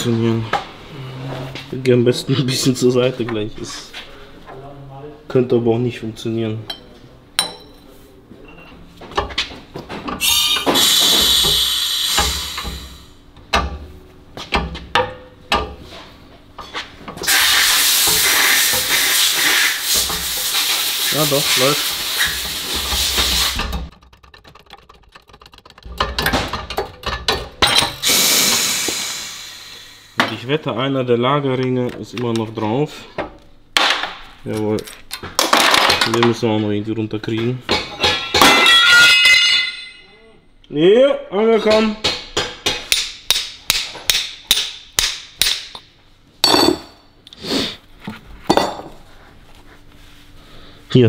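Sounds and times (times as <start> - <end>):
steady hiss: 17.2 - 23.7, 28.0 - 30.2
sharp metal clicks and knocks: 22.4 - 28.0
hammer striking steel: 37.7 - 40.1, 41.7 - 47.0.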